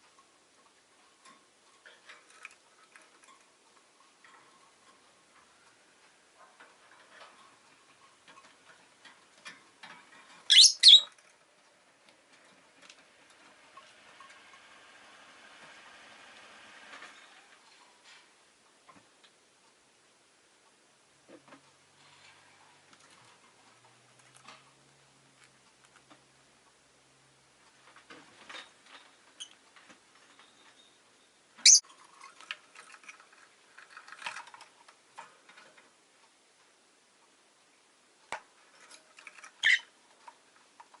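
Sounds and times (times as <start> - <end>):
bird clicking and scratching: 0.1 - 18.3, 21.3 - 26.4, 31.8 - 36.0, 38.3 - 41.0
shrill bird chirps: 10.5 - 11.1, 30.5 - 31.8, 39.6 - 39.9.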